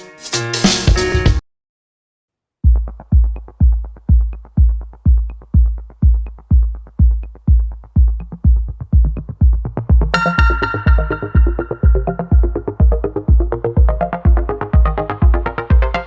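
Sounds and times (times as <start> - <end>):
drum-machine kick beat: 2.6 - 16.0.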